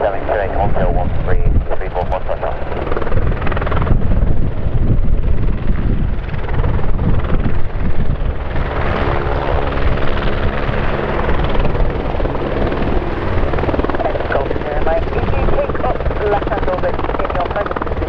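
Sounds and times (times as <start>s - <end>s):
helicopter engine tones: 0.0s - 18.0s
helicopter rotor chop: 0.0s - 18.0s.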